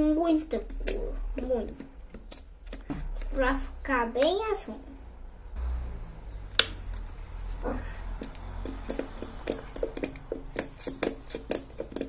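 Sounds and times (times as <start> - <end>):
plastic containers clicking and tapping: 8.2 - 12.0.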